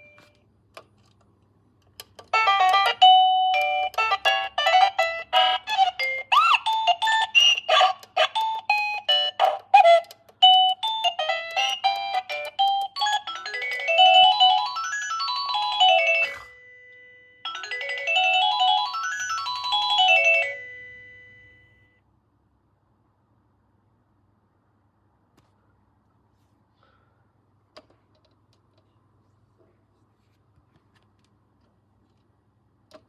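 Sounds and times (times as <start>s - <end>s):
electronic doorbell chime: 0.0s - 0.3s, 2.4s - 6.2s, 10.4s - 22.0s.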